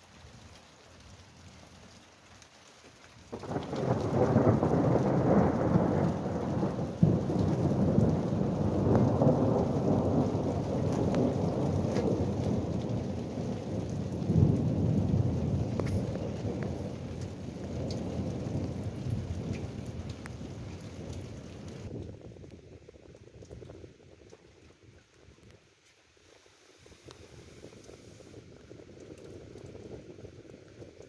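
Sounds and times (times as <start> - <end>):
rain falling: 0.0 - 31.0
thunder clap and rumble: 3.3 - 24.1
sharp thunder crack: 3.4 - 19.8.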